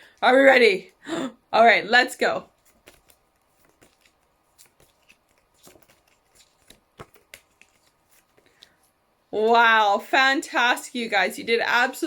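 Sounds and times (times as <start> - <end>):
faint handling clicks and rustles: 2.5 - 9.0.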